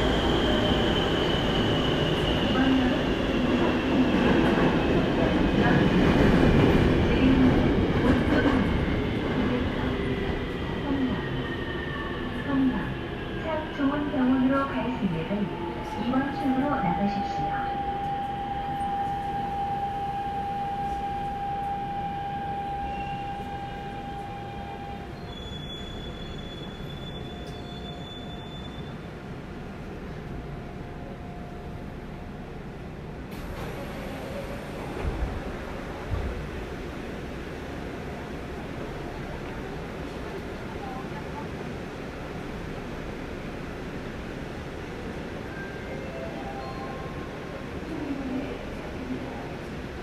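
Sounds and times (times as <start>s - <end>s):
train wheels rumbling on track: 0.0s - 11.5s
thin high whistle: 18.0s - 29.0s.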